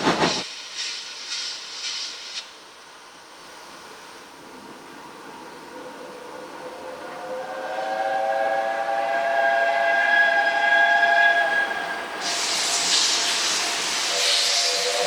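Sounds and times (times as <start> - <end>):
loud steam hiss: 0.0 - 2.8, 12.2 - 15.0
steam locomotive whistle: 7.0 - 13.3, 14.0 - 15.0.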